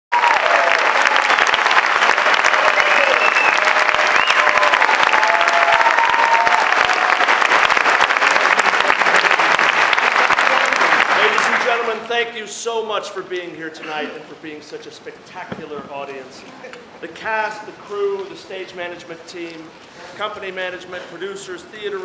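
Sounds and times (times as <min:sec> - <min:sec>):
people cheering: 0:00.1 - 0:12.0
audience applauding: 0:00.1 - 0:12.1.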